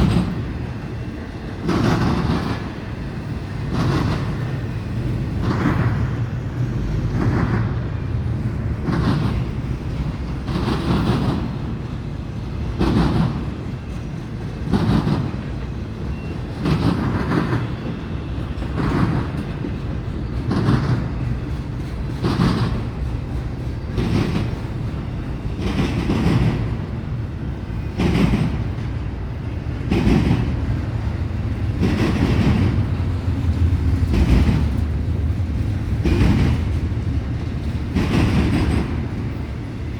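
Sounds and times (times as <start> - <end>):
freight train rumbling: 0.0 - 39.9
wheels clacking over rail joints: 8.7 - 39.9.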